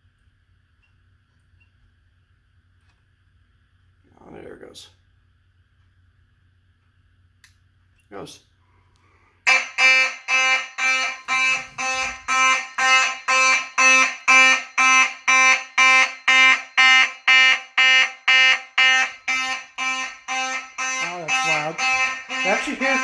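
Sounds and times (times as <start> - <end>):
fire alarm horn pulsing: 9.4 - 23.0.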